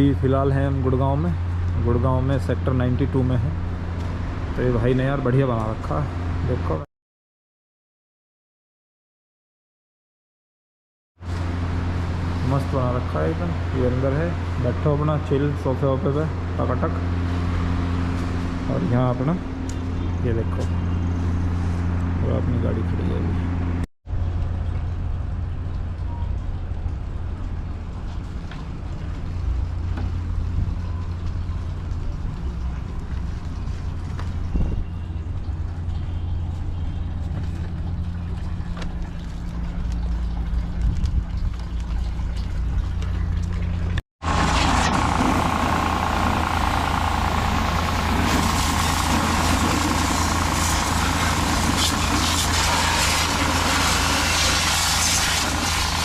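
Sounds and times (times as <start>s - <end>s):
steady low motor hum: 11.3s - 56.0s
pressure washer spraying: 44.3s - 56.0s.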